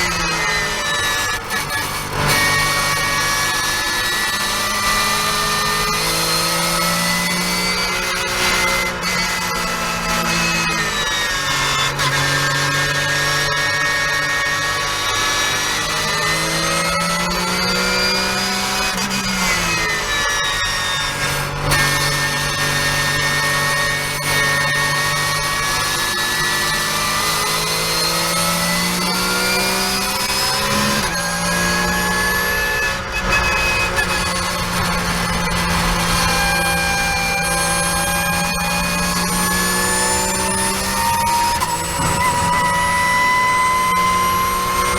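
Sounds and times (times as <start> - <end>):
race car engine revving: 0.0 - 44.9.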